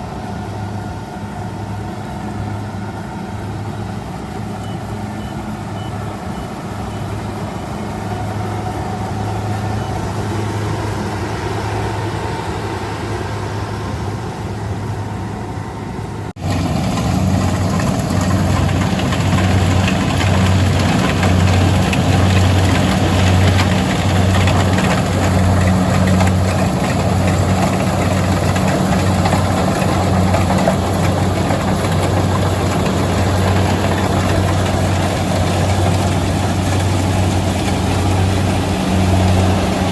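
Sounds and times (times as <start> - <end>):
combine harvester engine droning: 0.0 - 39.9.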